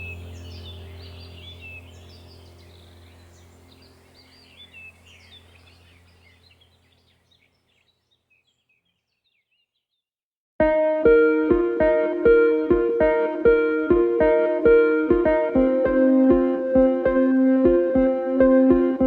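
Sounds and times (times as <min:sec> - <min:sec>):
low steady hum: 0:00.0 - 0:07.4
birds chirping: 0:00.0 - 0:10.0
plucked guitar music: 0:10.6 - 0:19.0.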